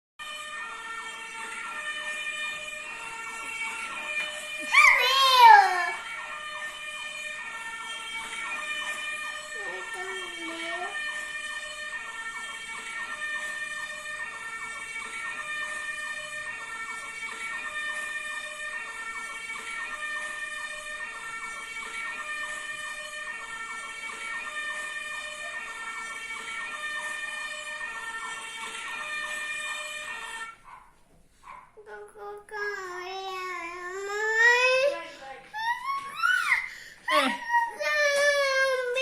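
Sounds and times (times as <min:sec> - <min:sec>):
two-tone fire engine siren: 0:00.2 - 0:30.8, 0:31.4 - 0:39.0
fast siren warble: 0:21.6 - 0:28.0.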